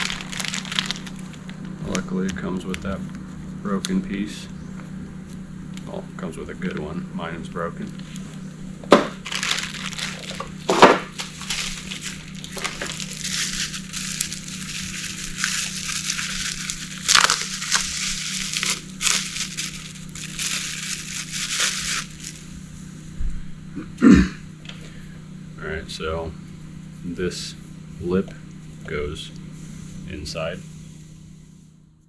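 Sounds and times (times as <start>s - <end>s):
plastic packaging crinkling: 0.0s - 2.8s, 8.9s - 22.5s
steady low hum: 0.0s - 32.0s.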